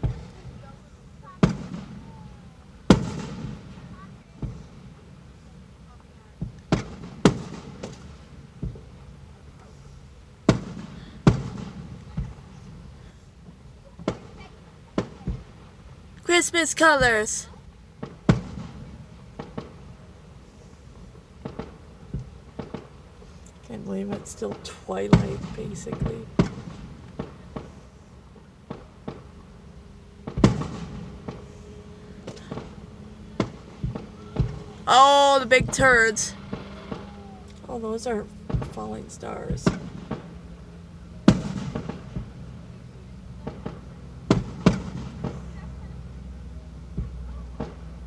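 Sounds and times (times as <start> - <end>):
fireworks bangs: 16.3 - 17.5.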